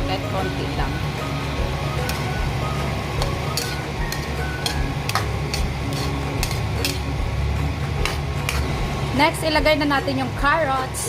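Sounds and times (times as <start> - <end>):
utensil scraping a pan: 3.2 - 7.1, 8.0 - 8.7.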